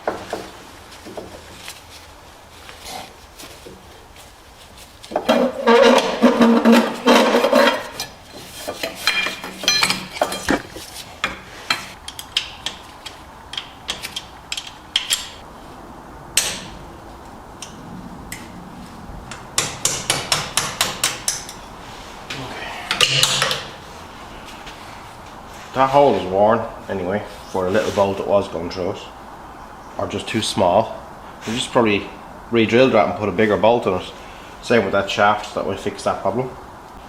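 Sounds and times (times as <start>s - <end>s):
metal tools clicking and tapping: 5.2s - 15.4s, 19.3s - 21.6s, 22.9s - 23.7s.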